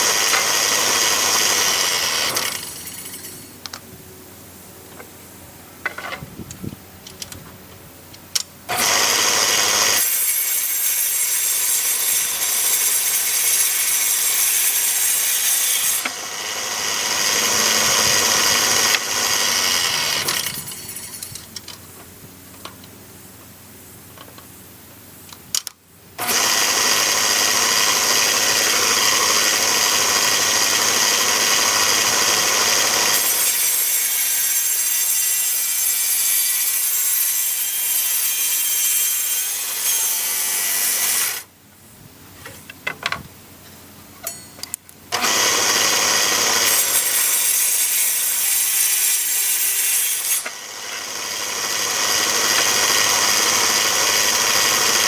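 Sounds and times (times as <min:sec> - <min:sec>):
power saw cutting wood: 0:00.0 - 0:03.6, 0:08.7 - 0:21.4, 0:26.2 - 0:41.5, 0:45.1 - 0:55.0
board handling clicks: 0:05.8 - 0:08.5.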